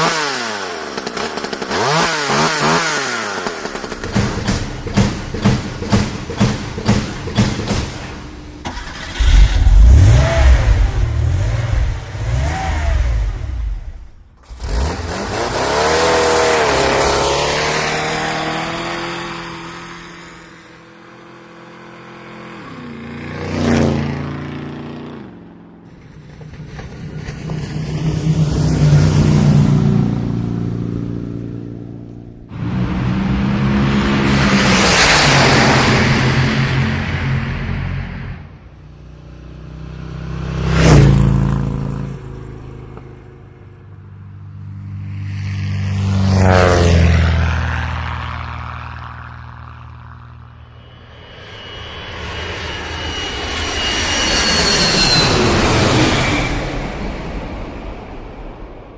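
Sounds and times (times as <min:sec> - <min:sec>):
vehicle engines revving past: 0:00.0 - 0:58.0
heavy low pounding: 0:03.6 - 0:14.4.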